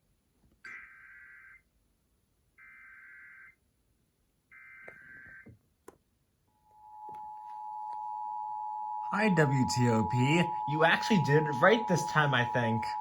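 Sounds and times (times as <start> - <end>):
buzzy warbling digital data tones: 6.8 - 13.0
two-tone attention signal: 6.8 - 13.0.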